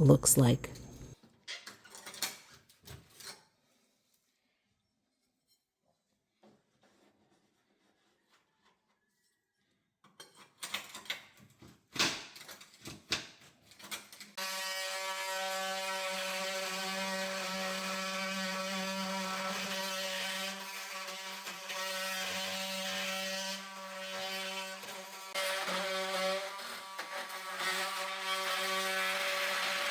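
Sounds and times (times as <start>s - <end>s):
power tool buzzing: 14.4s - 29.9s.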